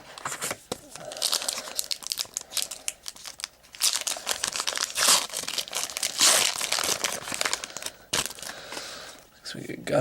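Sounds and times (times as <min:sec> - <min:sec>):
wrapper crinkling: 0:00.2 - 0:08.7.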